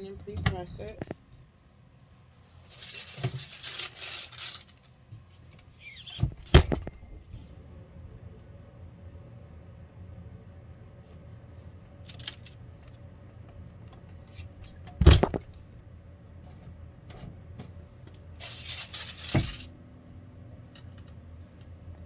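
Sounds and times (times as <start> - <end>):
heat press opening clunk: 6.2 - 7.2, 14.9 - 15.6.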